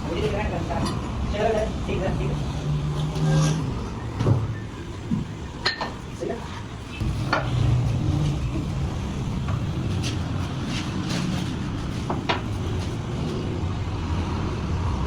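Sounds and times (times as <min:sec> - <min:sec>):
engine rumbling: 0:00.0 - 0:15.0
light knocks and clinks: 0:05.2 - 0:06.0.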